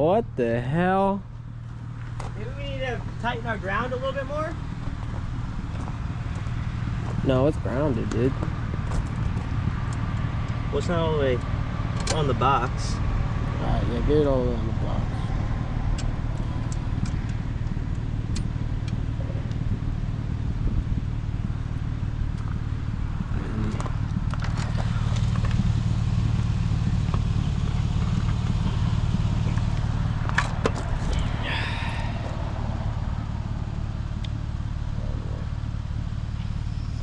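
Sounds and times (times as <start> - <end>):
vehicle engine idling: 0.0 - 37.0.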